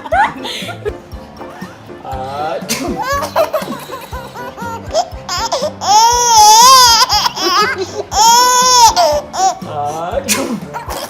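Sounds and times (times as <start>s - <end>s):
baby crying: 4.1s - 9.7s, 10.7s - 11.0s.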